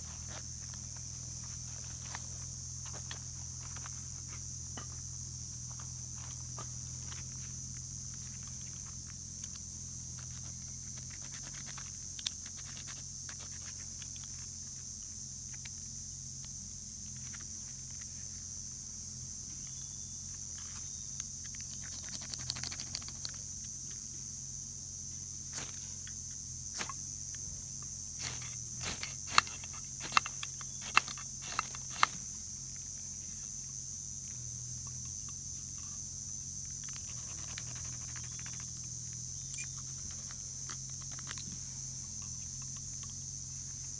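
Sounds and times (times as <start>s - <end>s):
firewood clicking and snapping: 28.2s - 32.3s.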